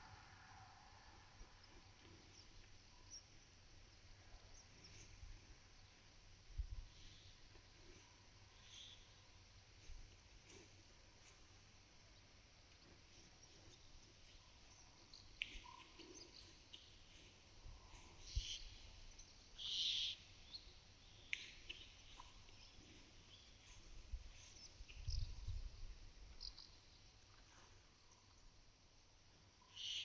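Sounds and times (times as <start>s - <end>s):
small birds chirping: 1.6s - 27.3s
faint clicks: 15.3s - 17.0s, 21.2s - 22.6s.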